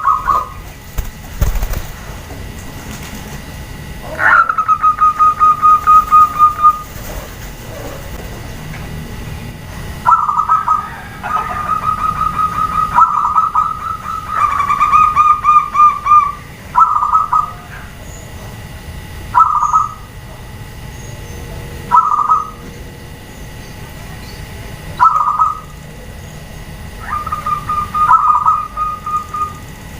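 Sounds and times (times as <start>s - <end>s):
doves cooing: 0.0s - 9.0s, 9.9s - 18.1s, 24.8s - 29.9s.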